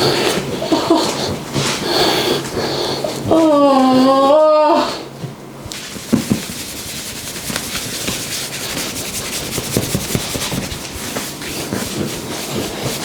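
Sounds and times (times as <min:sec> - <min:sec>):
hands rubbing over skin: 0:05.7 - 0:13.0.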